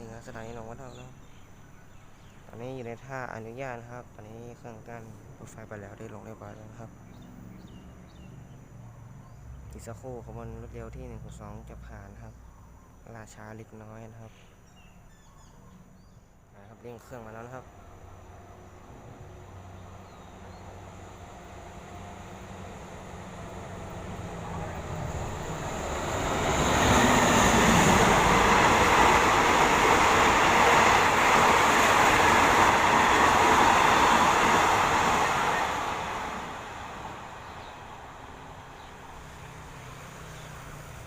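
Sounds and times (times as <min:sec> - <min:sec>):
locomotive diesel engine: 0:18.0 - 0:41.0.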